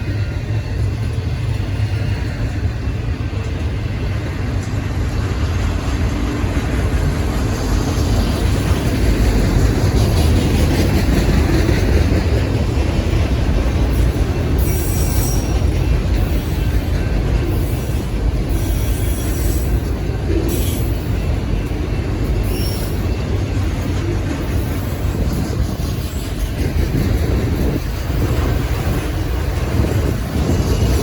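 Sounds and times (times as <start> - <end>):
freight train rumbling past: 0.0 - 31.0.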